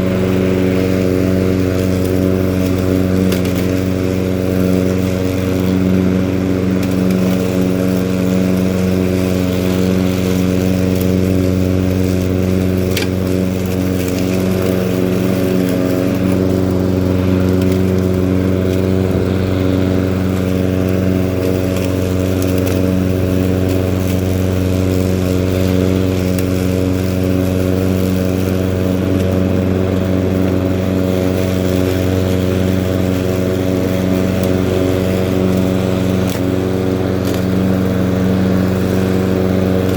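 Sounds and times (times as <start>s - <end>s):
lawn mower engine cutting grass: 0.0s - 39.9s.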